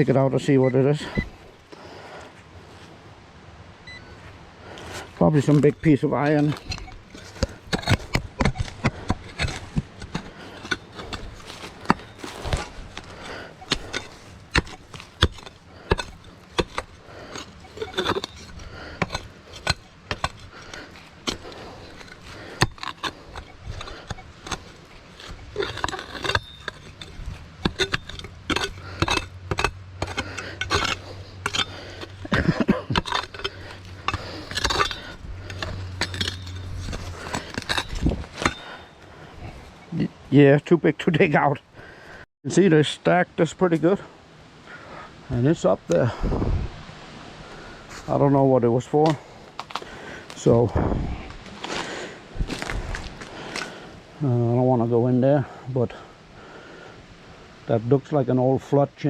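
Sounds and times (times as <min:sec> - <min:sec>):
shovel digging into ground: 0:04.7 - 0:39.9
shovel blade striking hard object: 0:05.3 - 0:39.0.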